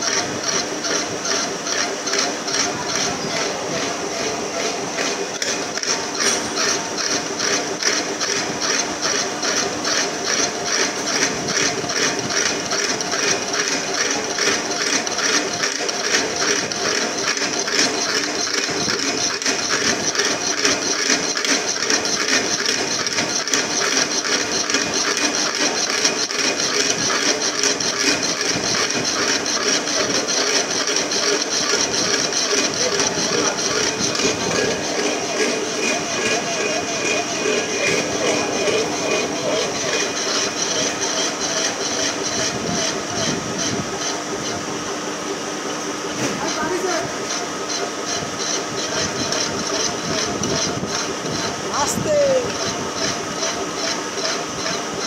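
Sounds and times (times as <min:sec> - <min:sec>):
metal lathe running: 0:00.0 - 0:55.0.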